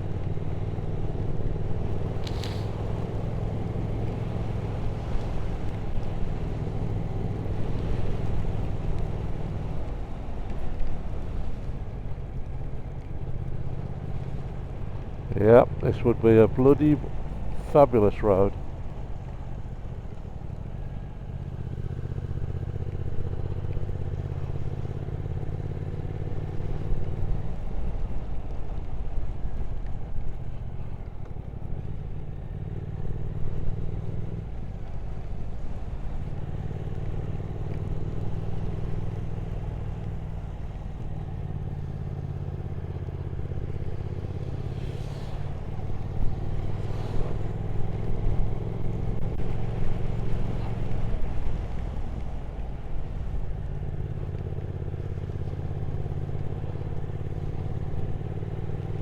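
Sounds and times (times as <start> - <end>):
motorcycle engine running: 0.0 - 59.0
road noise: 0.0 - 59.0.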